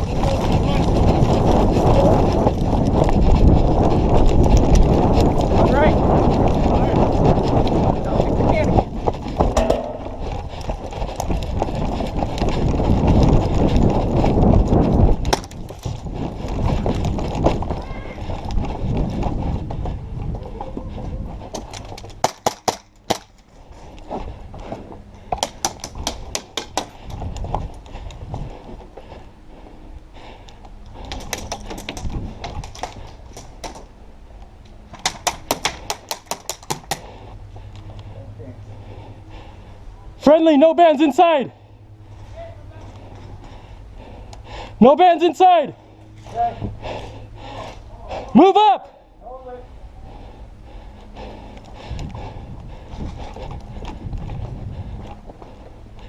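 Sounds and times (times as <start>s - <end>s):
gear clicking and rattling: 0.0s - 29.2s, 30.4s - 38.2s
running footsteps: 0.0s - 49.0s, 49.6s - 56.0s
sharp clicks and taps: 34.9s - 37.0s.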